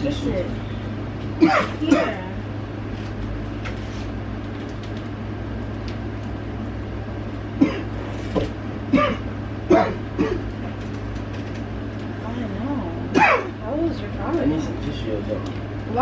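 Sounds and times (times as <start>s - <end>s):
steady low hum: 0.0s - 16.0s
person coughing: 1.4s - 2.3s, 7.6s - 8.0s, 8.9s - 10.5s, 13.1s - 13.6s.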